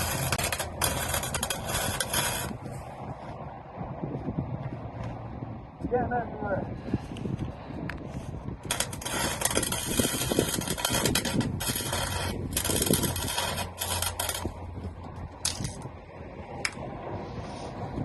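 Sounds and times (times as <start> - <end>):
welding arc crackling: 0.0 - 2.9, 8.6 - 16.0.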